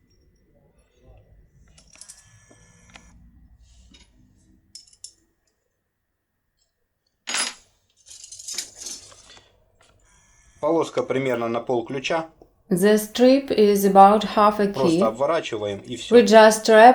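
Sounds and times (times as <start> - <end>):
metal lockpicks clinking: 4.8 - 5.2, 7.3 - 9.4
rustling scrape: 8.0 - 10.6.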